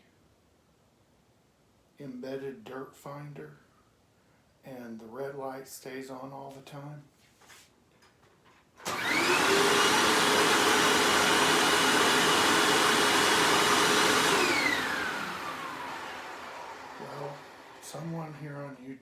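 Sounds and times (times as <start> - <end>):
upright vacuum cleaner running: 8.8 - 18.7.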